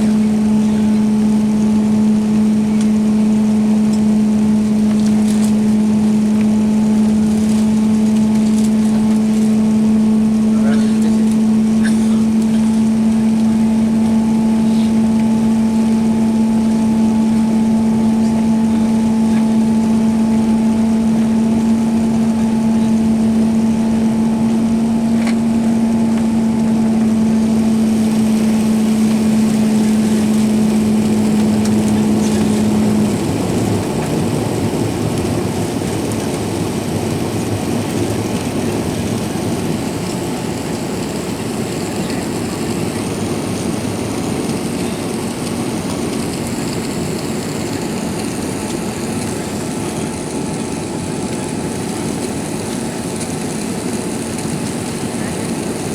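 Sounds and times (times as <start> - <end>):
steady cabin hum: 0.0 - 52.3
engine and airflow rush: 0.0 - 55.9.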